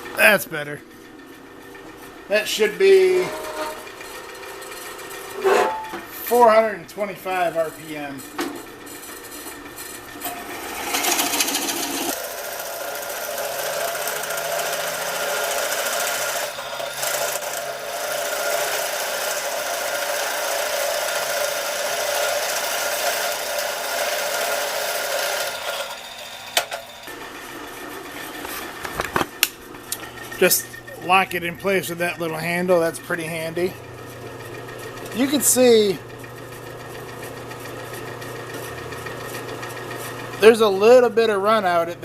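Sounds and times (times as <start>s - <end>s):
drill press boring into wood: 9.4s - 27.2s, 34.2s - 41.0s
drill press clicks: 25.2s - 27.1s.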